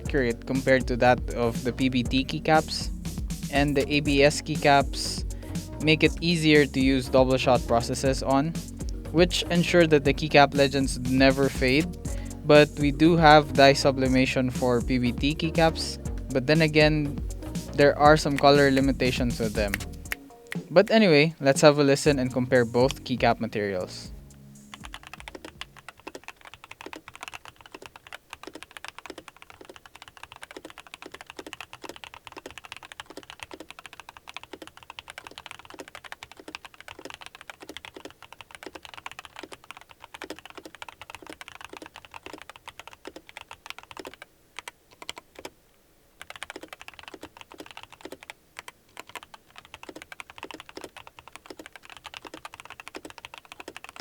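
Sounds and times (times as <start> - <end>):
fast typing on mechanical keyboard: 24.8 - 45.5, 46.2 - 54.0.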